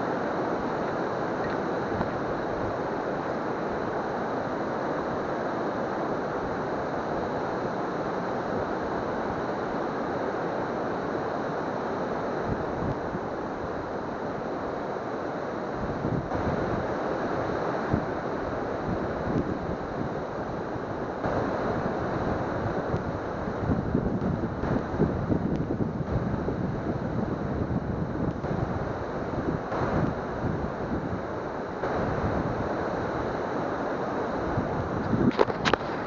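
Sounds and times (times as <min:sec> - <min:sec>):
waterfall rushing: 0:00.0 - 0:23.8, 0:28.4 - 0:36.0
wind buffeting microphone: 0:15.7 - 0:33.5, 0:34.3 - 0:36.0.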